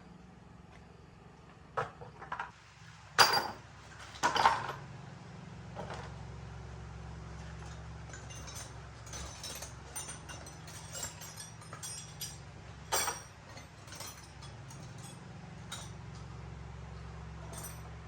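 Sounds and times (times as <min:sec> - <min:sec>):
steady low hum: 0:04.9 - 0:18.0
metallic clinks of hand tools: 0:07.7 - 0:16.3, 0:17.4 - 0:17.9.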